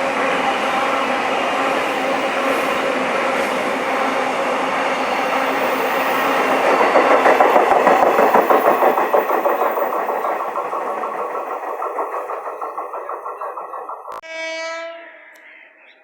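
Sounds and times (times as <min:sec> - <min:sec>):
train wheels clattering: 0:00.7 - 0:14.2.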